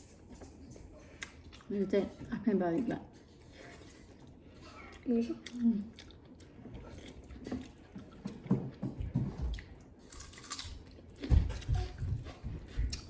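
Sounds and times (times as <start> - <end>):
person chewing food: 3.2 - 13.0.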